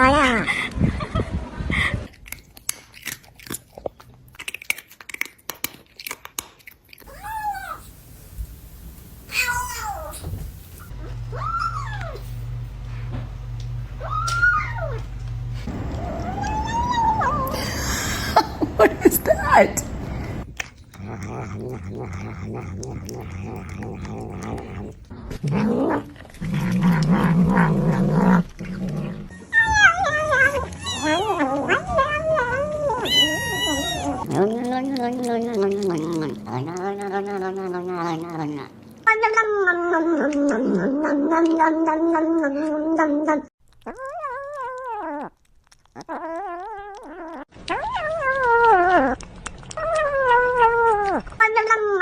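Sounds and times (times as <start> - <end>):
cat crunching food: 2.1 - 12.5, 15.6 - 25.2, 34.3 - 39.0, 43.6 - 51.8
cat gliding cry: 7.1 - 12.2, 15.7 - 20.4.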